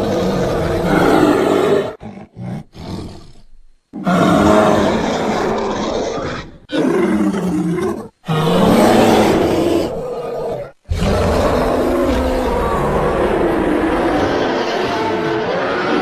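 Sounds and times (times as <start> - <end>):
creature roars and growls: 0.0 - 3.2, 4.0 - 16.0.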